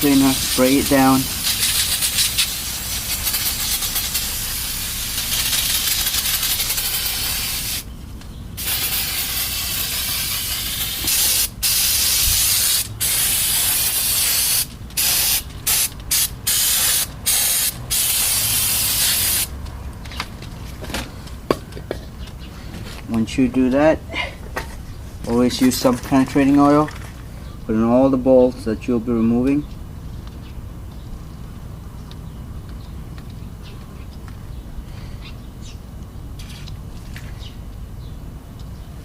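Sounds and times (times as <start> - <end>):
aerosol spray hissing: 0.0 - 7.9, 8.6 - 19.5.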